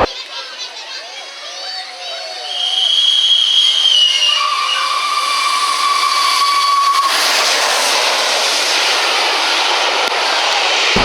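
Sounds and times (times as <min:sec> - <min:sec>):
steam locomotive whistle: 0:02.3 - 0:08.4
passing train rushing: 0:04.5 - 0:11.0.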